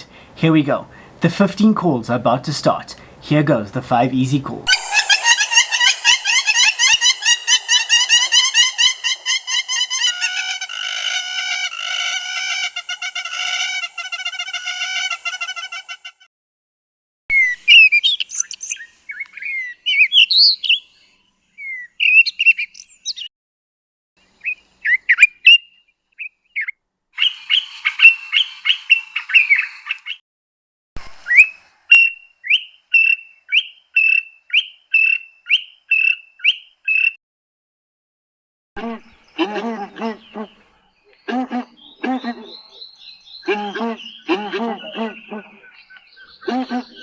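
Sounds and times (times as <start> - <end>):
short rising whistled bird notes: 17.3 - 20.9, 31.2 - 37.2
bird song whistled and warbled: 17.3 - 23.3, 24.4 - 30.2, 31.2 - 37.2, 40.2 - 47.0.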